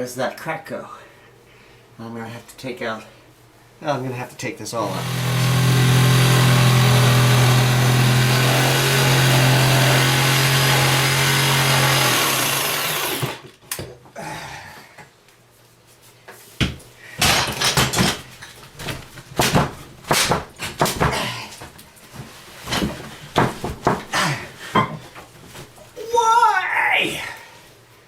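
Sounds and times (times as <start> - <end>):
power tool running: 4.8 - 13.4
sharp knocks and cracks: 16.6 - 21.2, 22.7 - 24.1.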